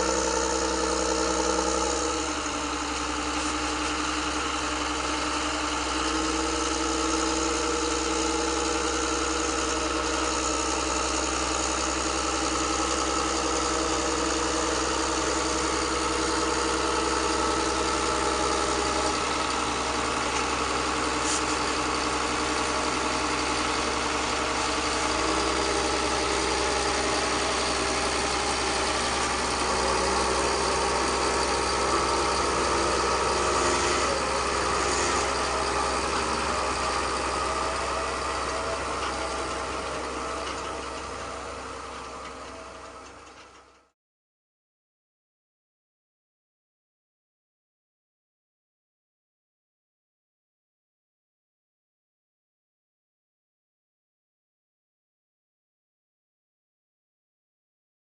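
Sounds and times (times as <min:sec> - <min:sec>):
engine idling: 0:00.0 - 0:43.9.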